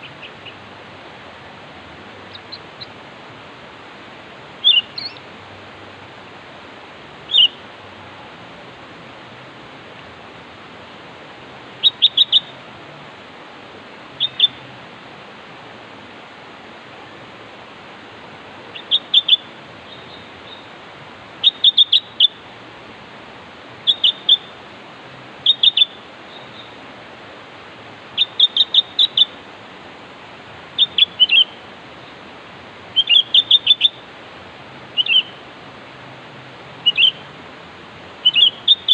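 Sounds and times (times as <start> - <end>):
bird chirping: 0.0 - 0.6, 2.3 - 2.9, 4.6 - 5.2, 7.3 - 7.6, 11.8 - 12.6, 14.2 - 14.6, 18.7 - 20.7, 21.4 - 22.4, 23.9 - 24.5, 25.4 - 26.8, 28.2 - 29.4, 30.8 - 32.2, 32.9 - 34.0, 35.0 - 35.4, 36.8 - 37.2, 38.2 - 38.9
steady hiss: 0.0 - 38.9.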